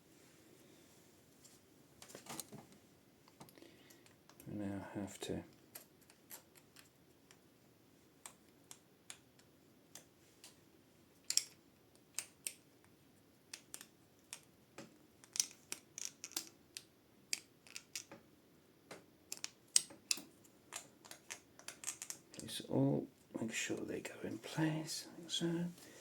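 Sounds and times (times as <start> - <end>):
small parts clicking into place: 11.2 - 12.6, 13.5 - 18.2, 18.9 - 22.5.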